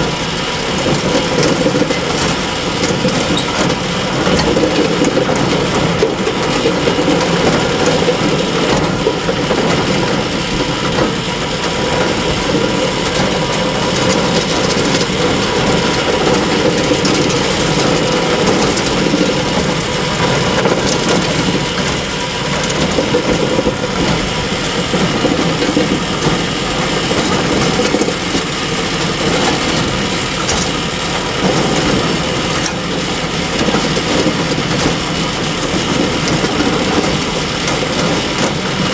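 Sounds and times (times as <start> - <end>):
bale elevator mechanical drone: 0.0 - 38.9.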